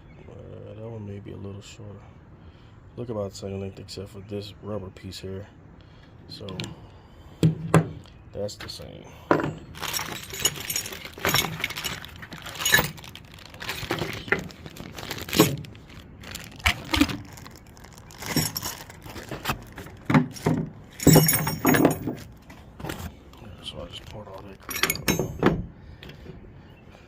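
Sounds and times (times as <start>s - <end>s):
metal hardware clattering: 8.6s - 14.5s, 15.2s - 15.7s, 18.2s - 22.4s, 24.6s - 25.6s
plastic bags crinkling: 9.7s - 22.3s.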